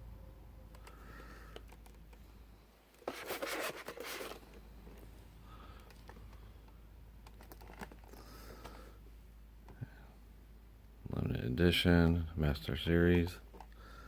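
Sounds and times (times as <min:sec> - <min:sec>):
packaging box rustling: 0:03.0 - 0:04.6.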